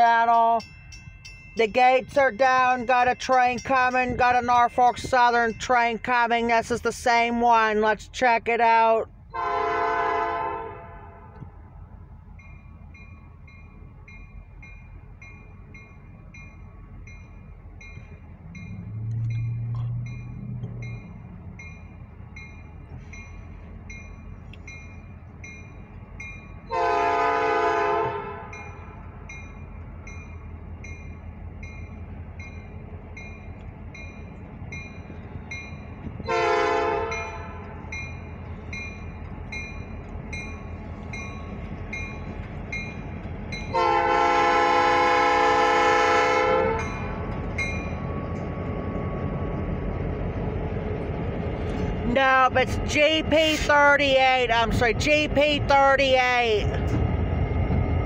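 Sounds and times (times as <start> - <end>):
crossing bell dinging: 0.0 - 9.6, 12.3 - 49.6
diesel locomotive rumble: 0.0 - 58.0
train horn blasts: 9.3 - 11.4, 26.7 - 29.0, 36.2 - 37.9, 43.7 - 47.2.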